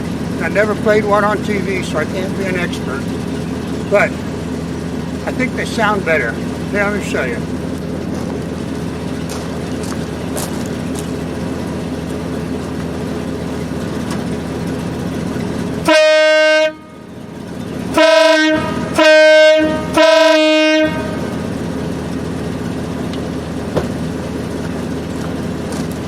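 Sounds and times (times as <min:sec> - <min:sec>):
engine idling: 0:00.0 - 0:26.0
air horn blasts: 0:15.8 - 0:17.2, 0:17.9 - 0:21.5.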